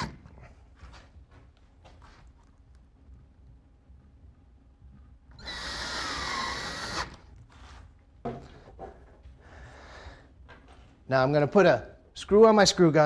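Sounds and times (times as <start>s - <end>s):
screw gun motor whine: 5.4s - 7.3s.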